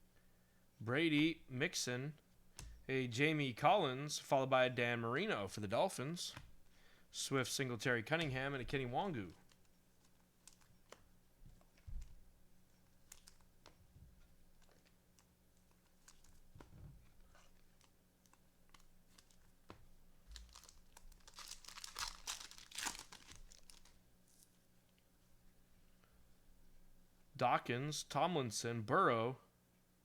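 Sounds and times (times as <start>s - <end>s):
foil wrapper crinkling and tearing: 20.3s - 24.0s.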